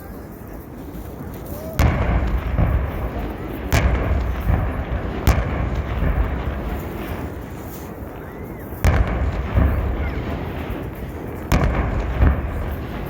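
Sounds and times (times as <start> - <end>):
fireworks shells bursting: 0.2 - 13.0
low rumble of booms: 1.8 - 8.1, 8.8 - 13.0.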